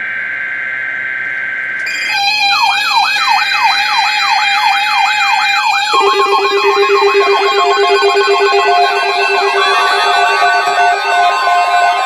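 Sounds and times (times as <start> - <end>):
electronic siren yelping: 1.9 - 12.0
pulsing beeps: 5.8 - 12.0
steady low tone: 5.9 - 12.0.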